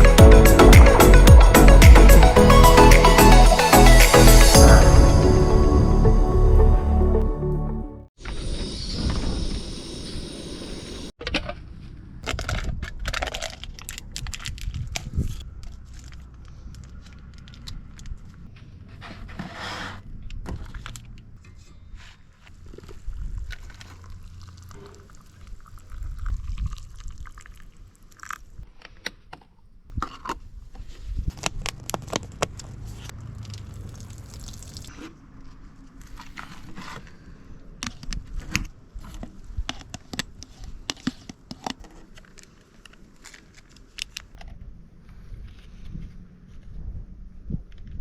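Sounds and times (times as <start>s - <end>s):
low rumble: 0.0s - 8.1s
liquid pouring: 23.9s - 28.4s, 33.7s - 34.9s.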